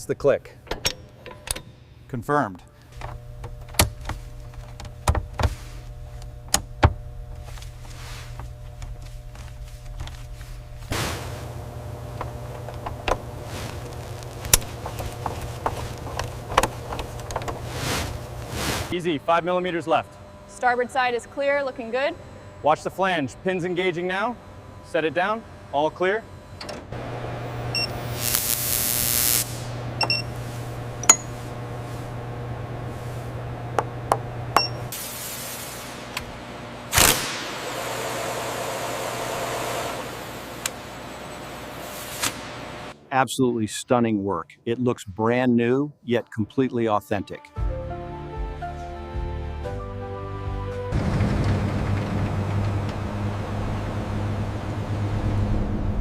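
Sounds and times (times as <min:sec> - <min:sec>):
low machine hum: 0:00.0 - 0:43.6, 0:50.9 - 0:56.0
sharp clicks and knocks: 0:12.1 - 0:17.6
sharp metallic clinks and taps: 0:31.0 - 0:31.4
hiss: 0:35.0 - 0:36.1.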